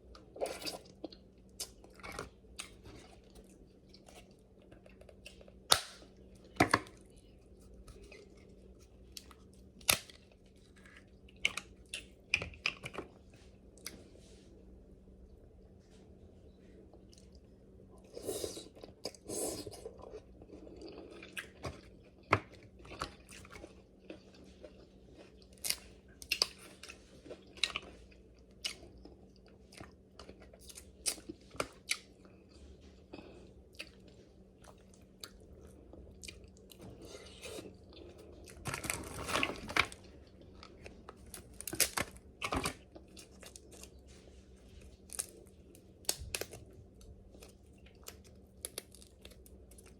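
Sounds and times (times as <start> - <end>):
chewing crab with crunches: 18.0 - 44.1.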